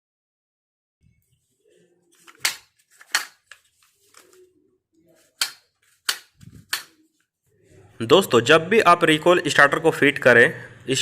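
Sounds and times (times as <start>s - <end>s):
handling noise: 2.1s - 7.0s
plastic and metal parts clicking: 2.2s - 4.4s, 5.3s - 7.0s.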